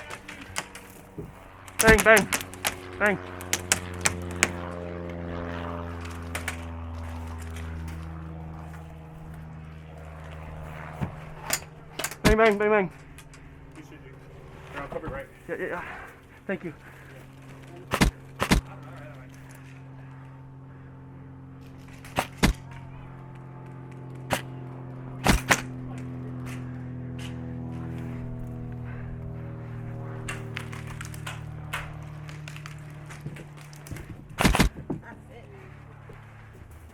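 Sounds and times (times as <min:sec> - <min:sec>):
airsoft rifle shots: 0:00.0 - 0:01.0, 0:01.6 - 0:04.6, 0:06.0 - 0:07.4, 0:17.9 - 0:18.8, 0:22.0 - 0:22.8, 0:24.2 - 0:27.4, 0:30.2 - 0:34.8
low mechanical hum: 0:00.0 - 0:36.9
background music drone: 0:19.3 - 0:36.9.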